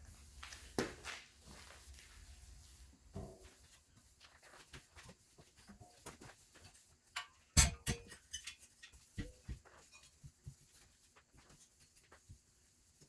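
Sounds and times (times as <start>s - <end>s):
knocks and clinks on metal frame: 5.7s - 10.7s.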